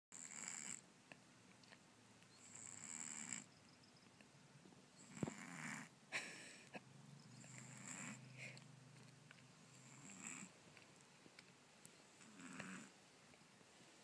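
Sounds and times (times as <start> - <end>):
kitten snoring with whistle: 0.2 - 0.8, 2.4 - 3.5, 5.0 - 5.9, 7.3 - 8.4, 9.8 - 10.5, 12.2 - 12.9.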